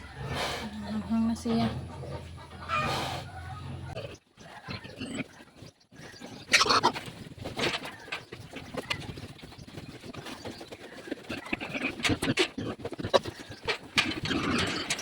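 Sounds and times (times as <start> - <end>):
farm animal calls: 0.0 - 15.0.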